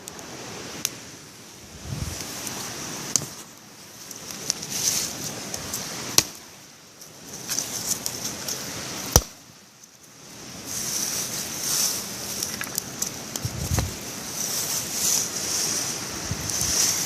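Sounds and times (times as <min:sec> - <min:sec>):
wind gusts on microphone: 0:01.6 - 0:03.2, 0:13.3 - 0:17.0
rustling: 0:01.7 - 0:17.0
sharp cracks: 0:09.1 - 0:09.4.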